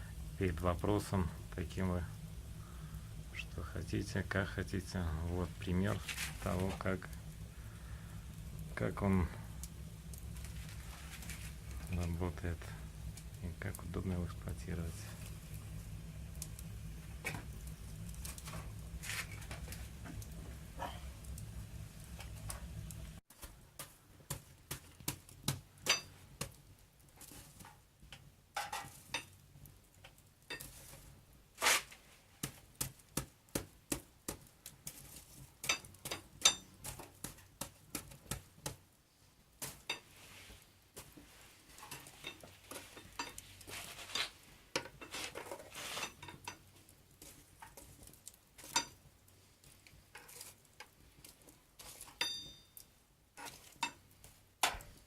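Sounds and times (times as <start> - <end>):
metal skewers clinking: 25.9 - 26.2, 41.8 - 45.1, 51.8 - 54.0.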